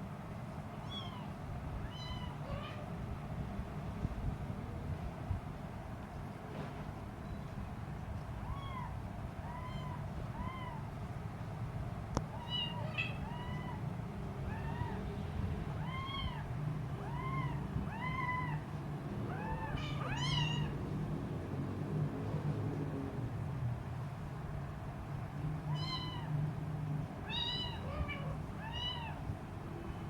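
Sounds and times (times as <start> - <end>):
kitten meowing: 0.8 - 2.9, 8.4 - 10.8, 12.3 - 13.8, 14.4 - 15.0, 15.8 - 18.7, 19.3 - 20.8, 25.7 - 26.3, 27.2 - 29.3.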